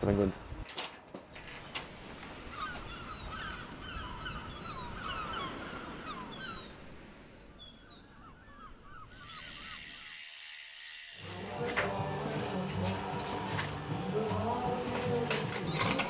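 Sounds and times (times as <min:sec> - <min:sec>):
birds calling: 0:01.2 - 0:10.3, 0:14.0 - 0:16.0.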